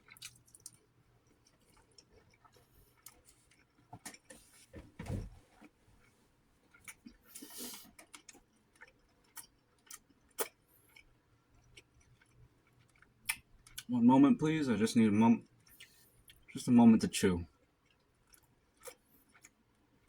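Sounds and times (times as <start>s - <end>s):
person chewing: 0.0s - 4.6s, 6.7s - 13.9s, 15.4s - 16.5s, 17.6s - 20.0s
low thud: 4.8s - 5.4s.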